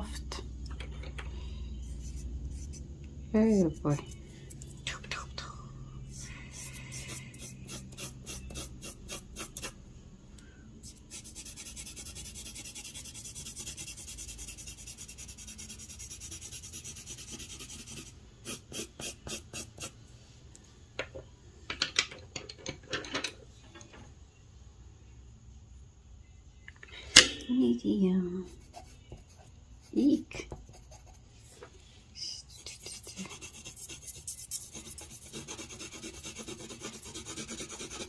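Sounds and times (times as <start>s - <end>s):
pencil scratching on paper: 1.8s - 2.9s, 6.1s - 9.8s, 10.8s - 20.0s, 28.5s - 31.2s, 32.6s - 38.0s.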